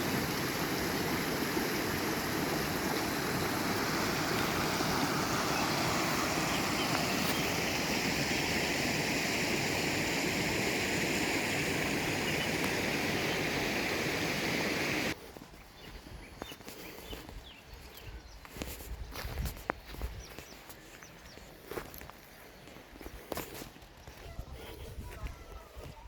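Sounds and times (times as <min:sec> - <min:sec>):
stream water rushing: 0:00.0 - 0:15.2.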